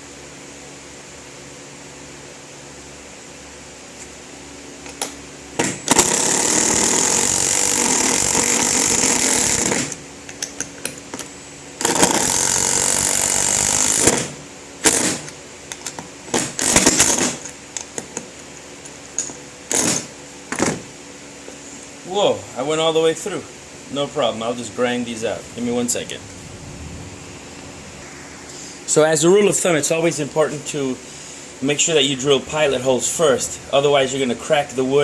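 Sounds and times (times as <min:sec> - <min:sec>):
power drill driving screws into wood: 0:05.6 - 0:10.0, 0:11.8 - 0:15.3, 0:16.3 - 0:17.4, 0:19.7 - 0:20.7.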